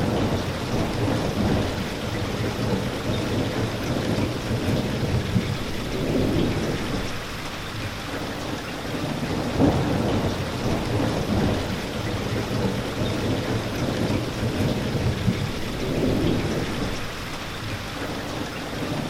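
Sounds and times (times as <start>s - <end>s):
rolling thunder rumble: 0.0s - 7.9s, 9.0s - 17.8s
rain falling: 0.0s - 19.0s.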